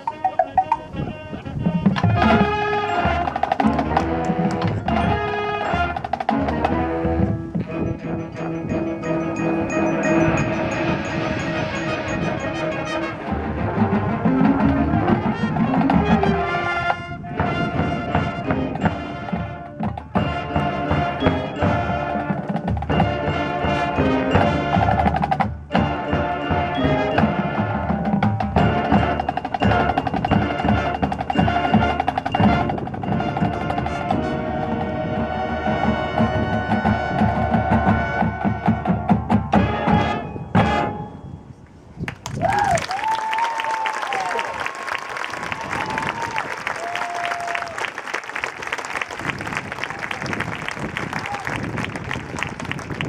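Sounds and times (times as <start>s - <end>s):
drums and mallet percussion: 0.0s - 12.5s, 13.3s - 16.5s, 17.4s - 35.0s, 35.7s - 40.9s
marching band playing: 0.0s - 41.2s.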